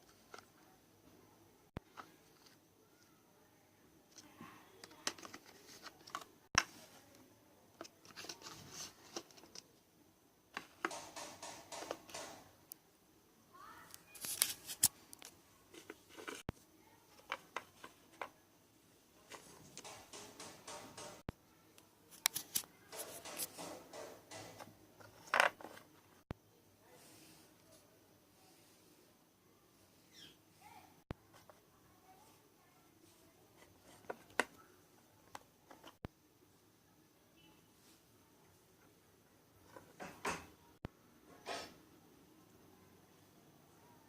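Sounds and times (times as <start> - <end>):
toy slime barrel clicks and rustles: 14.1 - 16.4.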